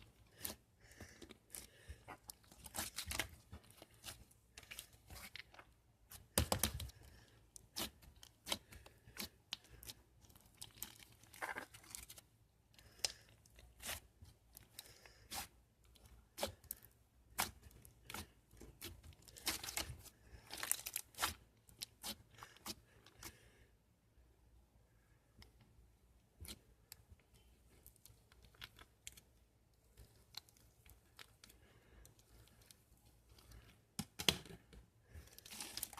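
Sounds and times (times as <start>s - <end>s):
thin material tearing and crinkling: 35.4s - 35.9s.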